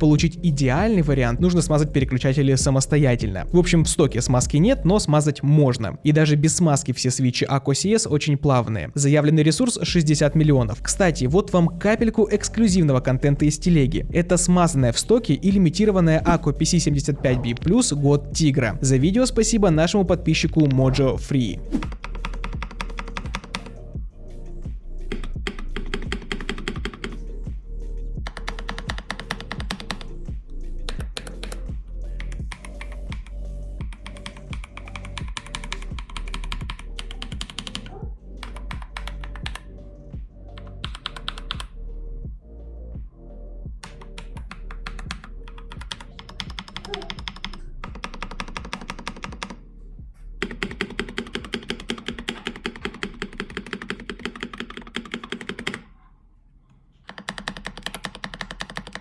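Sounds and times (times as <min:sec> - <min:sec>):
background music: 0:00.0 - 0:55.8
mechanical keyboard typing: 0:21.8 - 0:23.8, 0:25.1 - 0:27.2, 0:28.3 - 0:30.1, 0:30.9 - 0:39.7, 0:40.6 - 0:41.7, 0:43.8 - 0:49.6, 0:50.4 - 0:55.9, 0:57.1 - 0:59.0.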